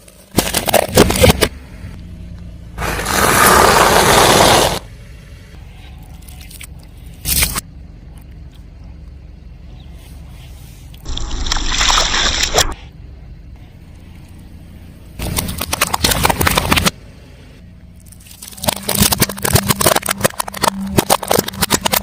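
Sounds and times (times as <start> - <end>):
car tyre crushing objects: 0.0 - 1.8, 2.7 - 4.9, 15.1 - 17.0, 17.9 - 22.0.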